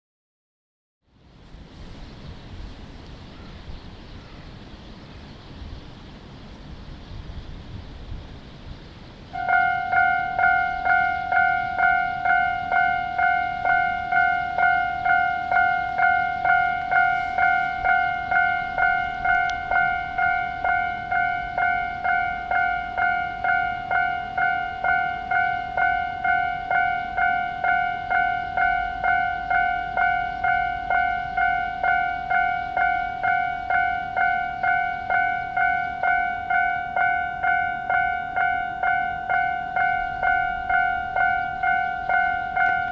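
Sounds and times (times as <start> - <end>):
level crossing electronic bell: 9.4 - 42.9.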